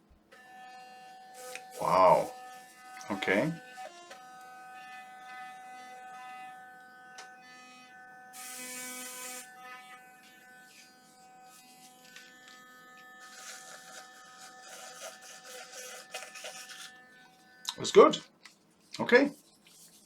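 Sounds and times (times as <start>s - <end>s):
electric toothbrush humming: 0.0s - 18.3s.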